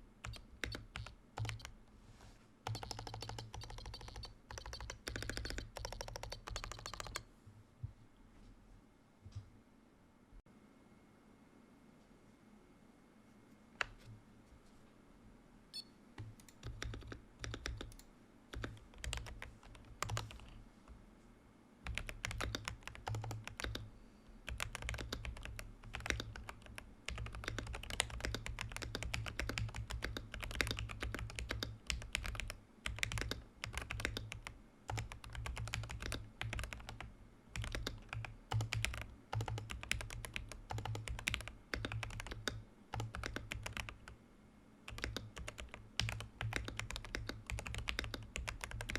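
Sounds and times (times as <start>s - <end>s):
mechanical keyboard typing: 0.2s - 1.8s, 2.6s - 7.2s, 16.4s - 20.6s, 21.9s - 23.9s, 24.5s - 44.2s, 44.9s - 48.9s.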